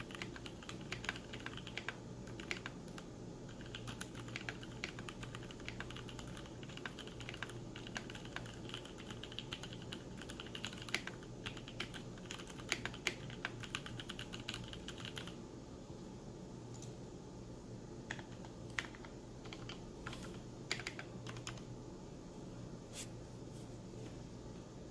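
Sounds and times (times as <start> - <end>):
mechanical keyboard typing: 0.0 - 15.4, 18.1 - 21.7.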